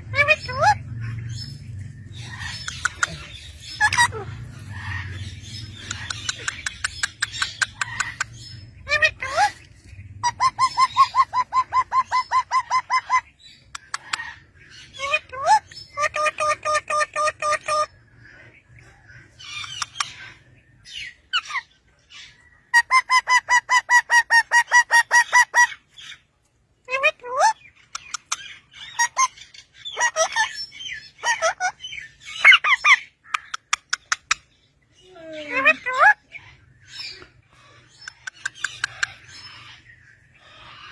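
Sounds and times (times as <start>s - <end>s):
parrot whistling and clucking: 2.0s - 9.6s, 10.2s - 14.4s, 22.7s - 25.9s, 27.2s - 34.5s.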